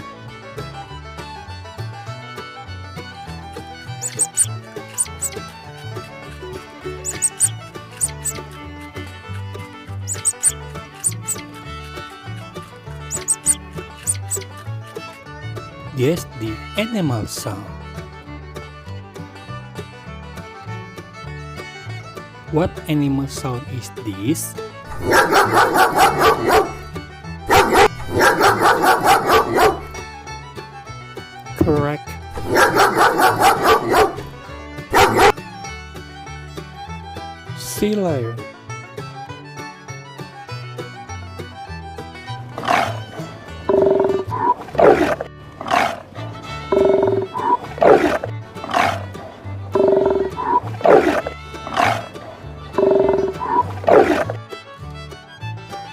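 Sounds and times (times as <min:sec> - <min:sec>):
background music: 0:00.0 - 0:55.9
dog barking rapidly: 0:04.0 - 0:05.4, 0:07.0 - 0:08.4, 0:10.1 - 0:11.4, 0:13.1 - 0:14.5, 0:24.9 - 0:26.9, 0:27.5 - 0:30.0, 0:32.4 - 0:34.3, 0:34.9 - 0:35.4, 0:42.6 - 0:46.1, 0:46.7 - 0:49.0, 0:49.8 - 0:52.2, 0:52.8 - 0:54.4.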